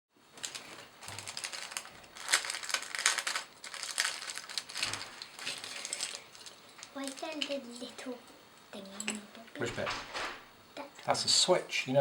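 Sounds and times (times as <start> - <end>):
rustling: 0.3 - 8.0
small objects clicking and rattling: 0.4 - 7.9.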